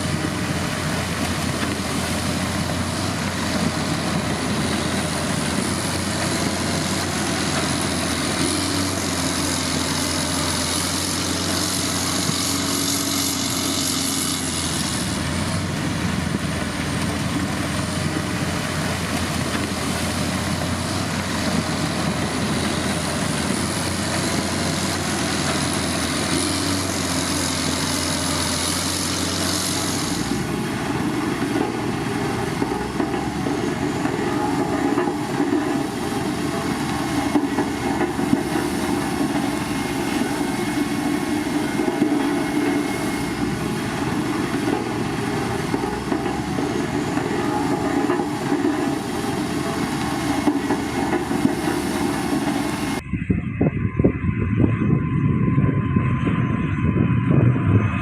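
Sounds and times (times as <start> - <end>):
heavy diesel engine running: 0.0 - 58.0
thin high whine: 21.0 - 58.0.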